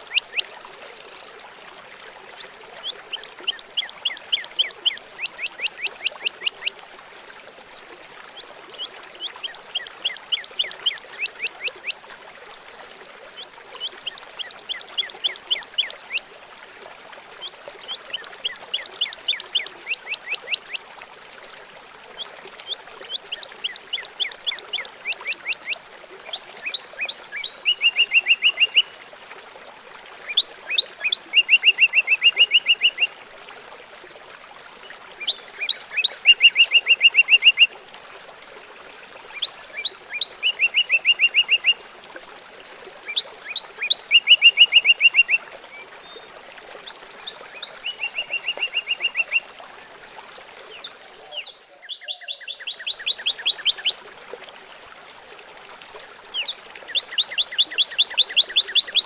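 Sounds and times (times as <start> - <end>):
trickling water hiss: 0.0 - 59.0
songbird singing with trill: 23.3 - 28.9, 30.3 - 33.1, 35.2 - 37.7, 39.4 - 41.8, 43.1 - 45.4, 47.2 - 49.4, 50.8 - 53.9.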